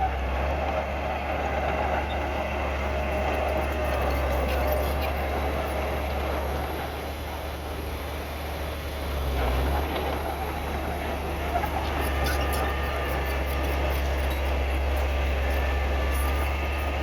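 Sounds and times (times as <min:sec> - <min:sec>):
diesel machinery rumbling: 0:00.0 - 0:17.0
metallic clanks and squeaks: 0:03.0 - 0:05.8, 0:11.4 - 0:17.0.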